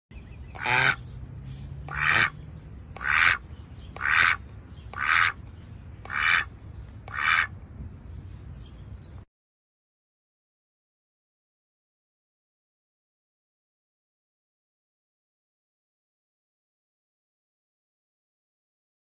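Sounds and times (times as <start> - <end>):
duck quacking: 0.5 - 1.1, 1.9 - 5.4, 6.0 - 7.6.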